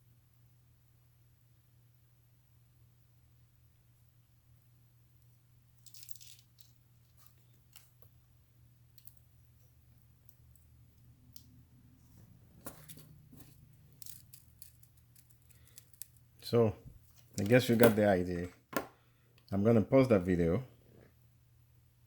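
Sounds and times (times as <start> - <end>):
faint handling clicks and rustles: 8.9 - 18.6.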